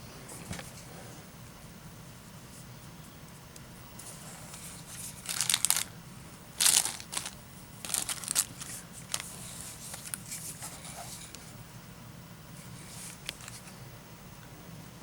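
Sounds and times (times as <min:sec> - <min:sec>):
faint low hum: 0:00.0 - 0:15.0
packaging crinkling and rustling: 0:04.9 - 0:05.9, 0:06.6 - 0:10.5.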